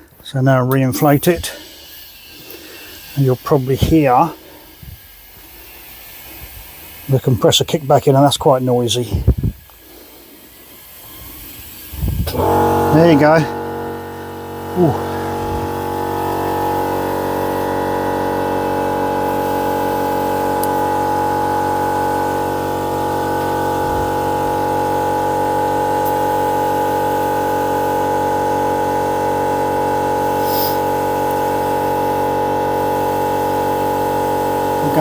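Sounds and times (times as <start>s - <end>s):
air compressor running: 0.9s - 7.2s, 8.1s - 35.0s
short air hiss: 1.0s - 7.1s, 9.1s - 13.9s, 30.3s - 31.8s.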